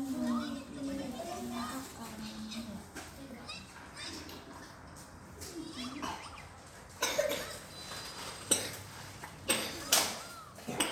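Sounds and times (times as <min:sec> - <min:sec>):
child coughing: 0:05.8 - 0:06.4, 0:07.0 - 0:07.7, 0:08.4 - 0:10.9.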